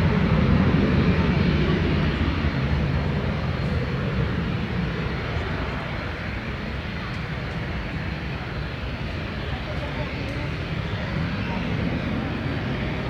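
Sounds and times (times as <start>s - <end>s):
jet engine rumble and hiss: 0.0s - 13.0s.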